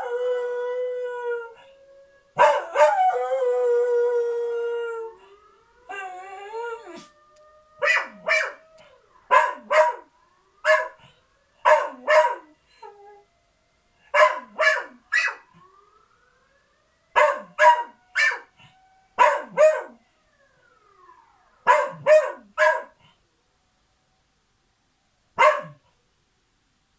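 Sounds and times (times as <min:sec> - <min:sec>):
faint emergency siren: 0:00.0 - 0:26.0
dog barking: 0:02.4 - 0:02.9, 0:07.8 - 0:08.6, 0:09.3 - 0:11.0, 0:11.6 - 0:12.4, 0:14.1 - 0:15.4, 0:17.2 - 0:18.5, 0:19.2 - 0:20.0, 0:21.6 - 0:23.0, 0:25.4 - 0:25.8.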